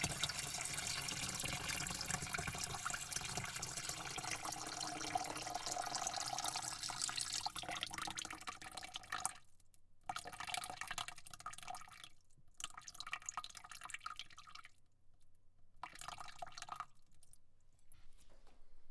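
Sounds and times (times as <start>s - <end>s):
water spraying into a bucket: 0.0s - 7.7s.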